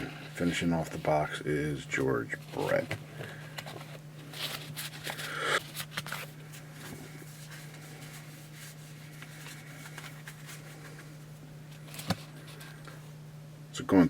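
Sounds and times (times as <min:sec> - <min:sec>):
steady low hum: 0:00.0 - 0:14.0
trading cards scraping and rustling: 0:02.0 - 0:13.0.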